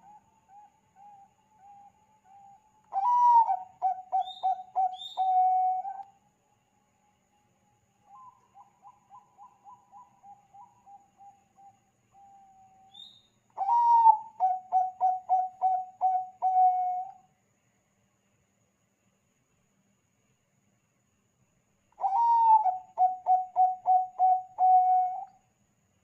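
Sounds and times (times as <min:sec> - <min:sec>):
dove cooing: 0:02.4 - 0:06.0, 0:13.6 - 0:17.1, 0:22.0 - 0:25.3.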